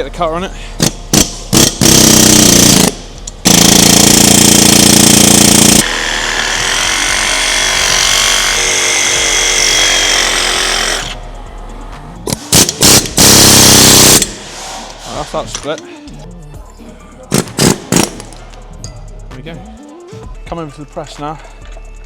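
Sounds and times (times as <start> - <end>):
pneumatic air chisel hammering: 0.8 - 11.2, 12.3 - 15.2, 17.3 - 18.4.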